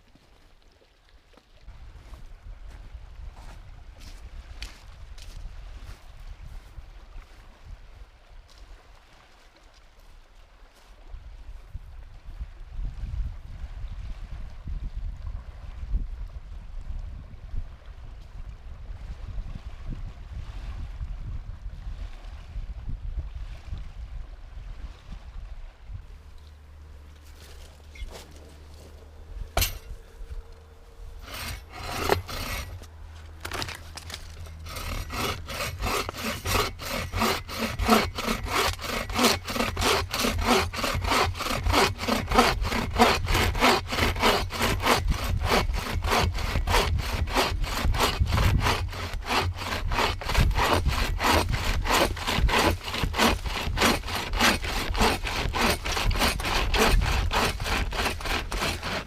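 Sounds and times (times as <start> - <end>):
hand saw cutting wood: 29.6 - 30.0, 31.1 - 59.0.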